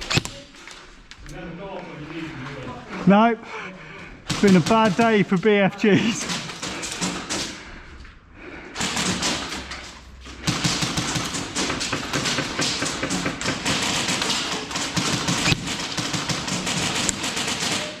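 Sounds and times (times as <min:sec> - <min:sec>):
airsoft guns firing: 0:04.3 - 0:05.4, 0:08.8 - 0:09.7, 0:10.4 - 0:18.0
pellets striking walls: 0:04.3 - 0:07.6, 0:10.4 - 0:18.0.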